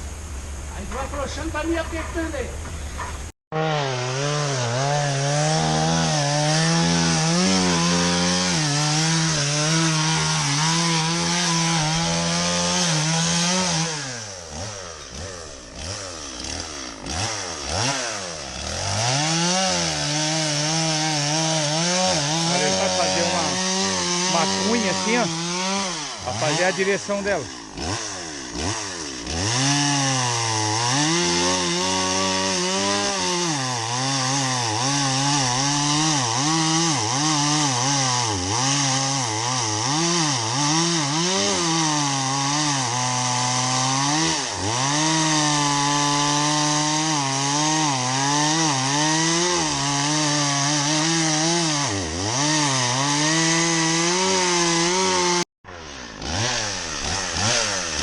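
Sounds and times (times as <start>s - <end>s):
chainsaw sawing into tree trunk: 3.5s - 58.0s.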